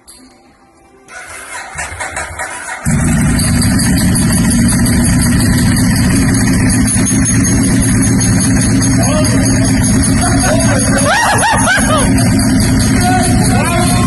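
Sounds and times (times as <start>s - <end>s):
vehicle engine idling: 1.1s - 14.0s.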